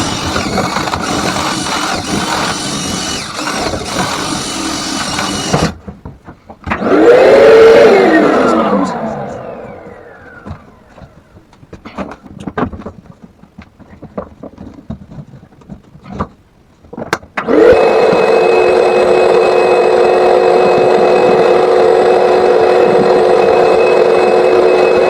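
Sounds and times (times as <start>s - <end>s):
electric motor running: 0.0s - 5.8s.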